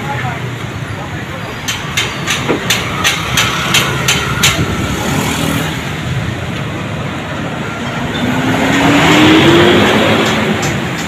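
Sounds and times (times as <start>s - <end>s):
vehicles passing: 0.0s - 11.0s
engine speeding up: 8.3s - 11.0s.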